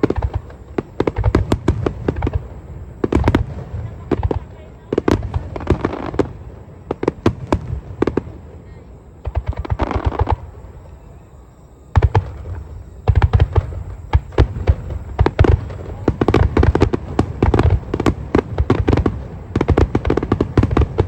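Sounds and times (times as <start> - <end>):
aerial fireworks bangs: 11.9 - 21.0.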